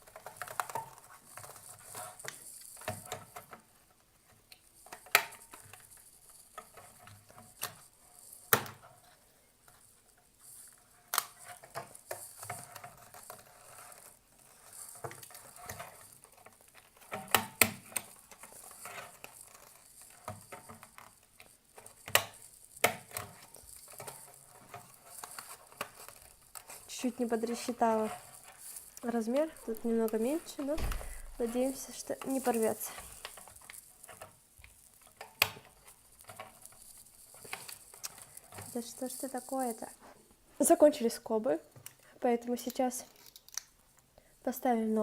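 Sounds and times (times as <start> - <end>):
paper strips being handled: 11.2 - 40.0.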